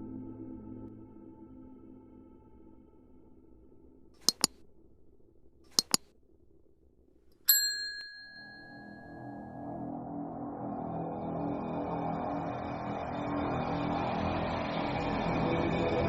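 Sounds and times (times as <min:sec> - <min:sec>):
bright bell ding: 0:04.2 - 0:04.5, 0:05.8 - 0:06.0, 0:07.5 - 0:09.3
double clicks: 0:04.2 - 0:04.5, 0:05.8 - 0:06.0.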